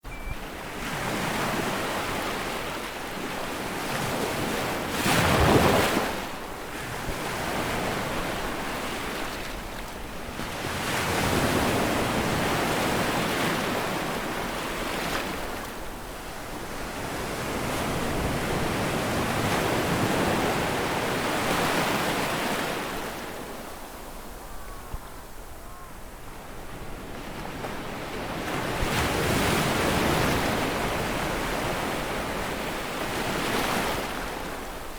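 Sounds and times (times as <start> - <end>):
sea waves breaking: 0.6 - 9.6.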